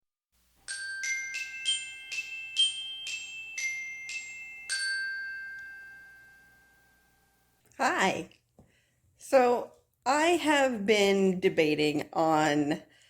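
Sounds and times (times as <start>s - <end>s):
glockenspiel melody: 0.6s - 7.4s.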